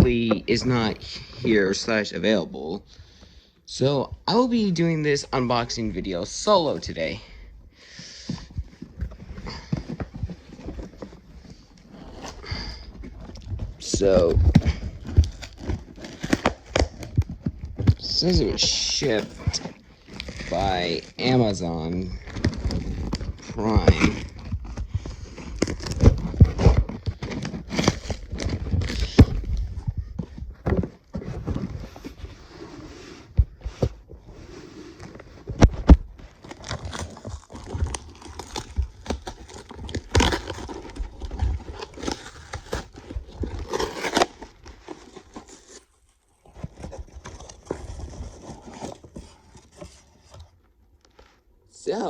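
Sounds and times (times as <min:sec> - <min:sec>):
tape and cardboard tearing: 0:08.3 - 0:50.6
packaging crinkling: 0:08.8 - 0:33.4, 0:34.9 - 0:50.4.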